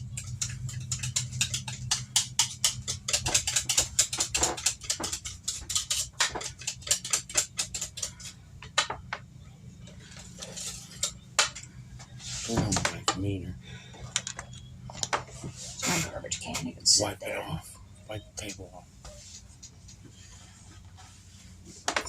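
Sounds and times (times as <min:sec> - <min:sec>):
whisk clicking against bowl: 0:00.0 - 0:08.8.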